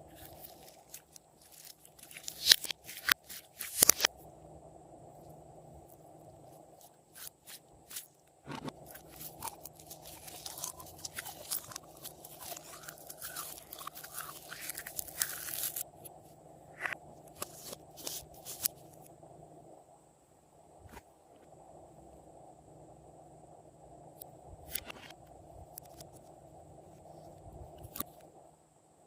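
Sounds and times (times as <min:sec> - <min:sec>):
slime crackling and popping: 0:00.1 - 0:04.1, 0:08.9 - 0:15.8
hands squeezing slime: 0:08.9 - 0:15.8.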